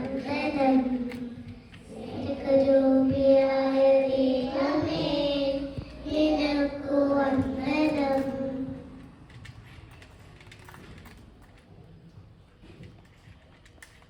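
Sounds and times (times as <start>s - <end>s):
young children singing: 0.0s - 8.9s.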